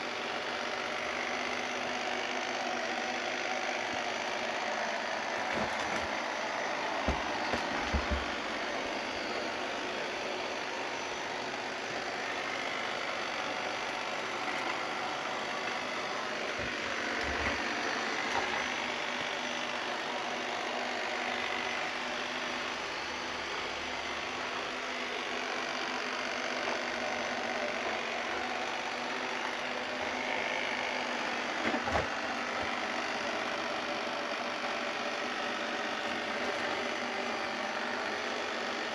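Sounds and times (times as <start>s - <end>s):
robot vacuum whirring: 3.4s - 38.9s
dull thumps: 7.0s - 8.4s.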